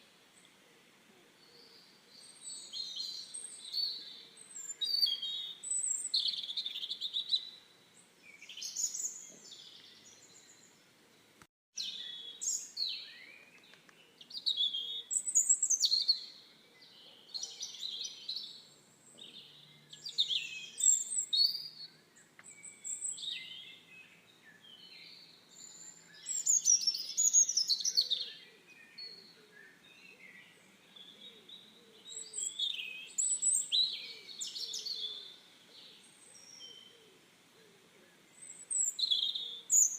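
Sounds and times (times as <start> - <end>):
songbirds chirping and singing: 0.0 - 39.9.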